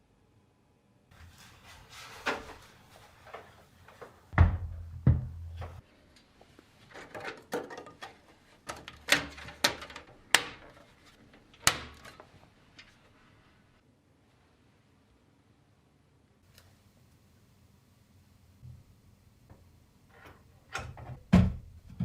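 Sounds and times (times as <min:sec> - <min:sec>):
heavy thuds: 0:04.4 - 0:05.8.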